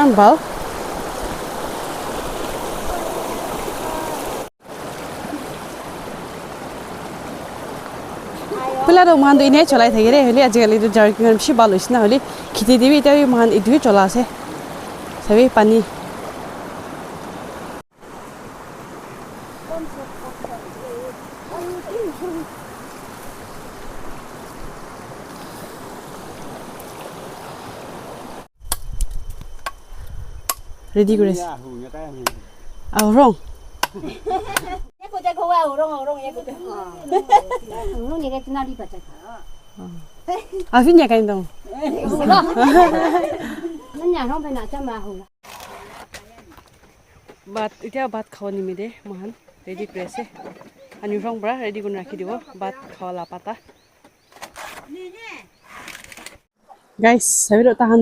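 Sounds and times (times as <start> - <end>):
river water flowing: 0.0 - 28.5
wavering voice-like call: 19.8 - 22.5.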